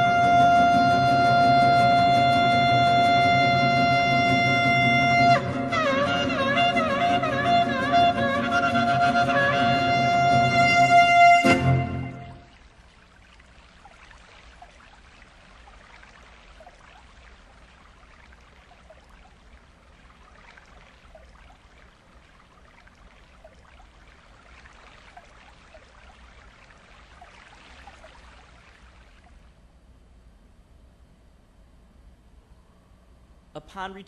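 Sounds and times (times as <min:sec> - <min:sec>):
water trickling and splashing: 0:00.0 - 0:29.8
small bubbling plinks: 0:12.4 - 0:29.4.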